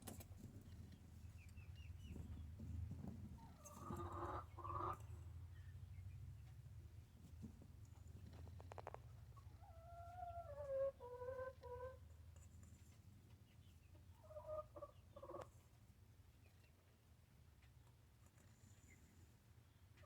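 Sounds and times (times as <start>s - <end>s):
hen clucking: 3.4s - 5.1s, 9.3s - 12.1s, 13.5s - 15.6s.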